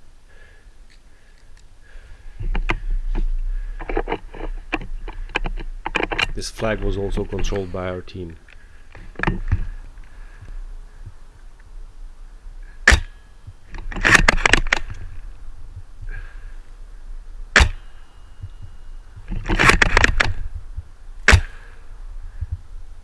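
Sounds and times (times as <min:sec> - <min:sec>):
airsoft rifle shots: 0:12.8 - 0:13.2, 0:17.5 - 0:18.0, 0:21.2 - 0:21.7.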